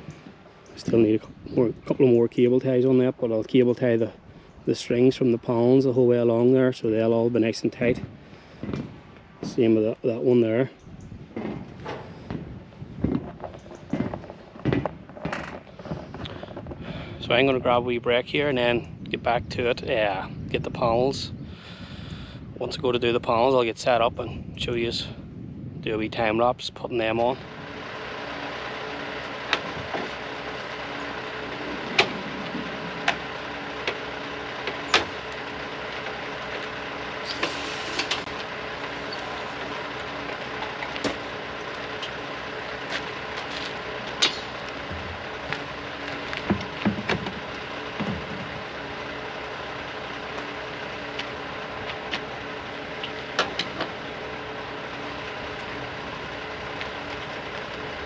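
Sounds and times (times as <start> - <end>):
engine idling: 0.0 - 17.6, 27.0 - 58.0
dull thuds: 8.0 - 9.7, 11.3 - 16.8, 44.1 - 48.6
sharp knocks and clicks: 46.2 - 48.5.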